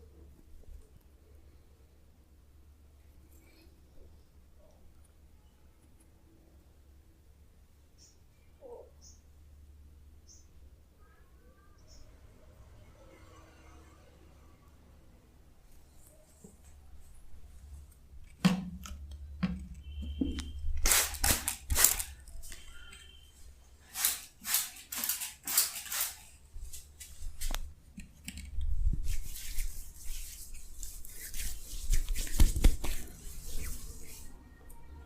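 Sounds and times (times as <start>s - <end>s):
hands patting skin: 26.6s - 34.3s
hands rubbing skin: 28.9s - 34.3s.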